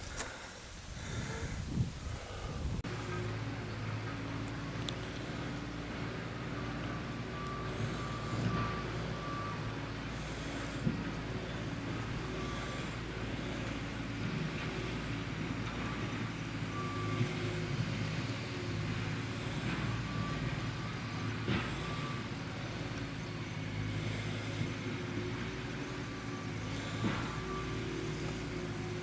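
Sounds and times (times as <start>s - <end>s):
low motor drone: 1.0s - 29.0s.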